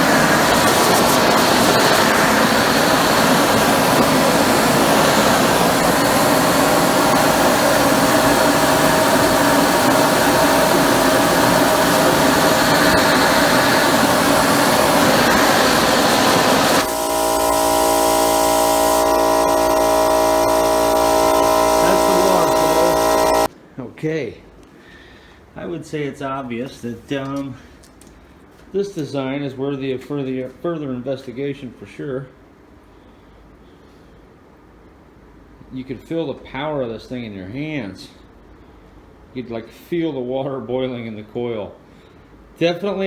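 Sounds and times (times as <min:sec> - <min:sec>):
electric motor hum: 0:00.0 - 0:23.5
steam jet rushing: 0:00.0 - 0:23.5.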